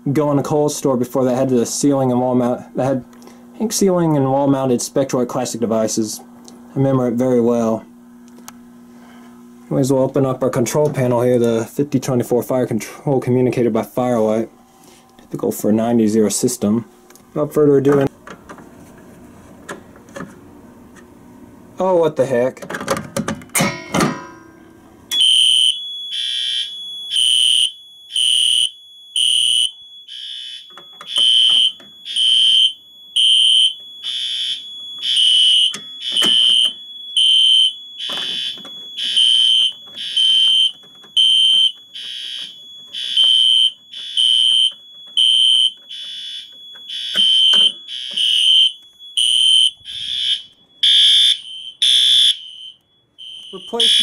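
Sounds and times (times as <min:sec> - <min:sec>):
steady alarm tone: 0:23.6 - 0:54.0
fire alarm horn pulsing: 0:24.7 - 0:54.0.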